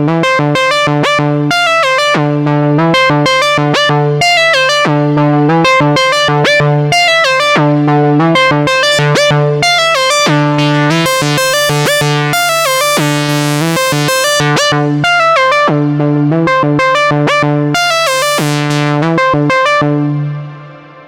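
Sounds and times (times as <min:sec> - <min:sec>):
synthesizer arpeggio: 0:00.3 - 0:21.0
held low synth note: 0:18.1 - 0:21.0.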